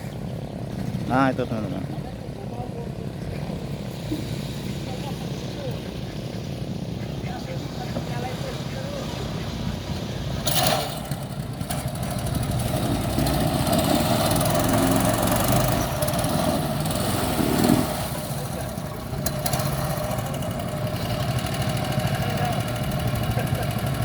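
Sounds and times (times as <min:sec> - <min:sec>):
engine running: 0:00.0 - 0:24.0.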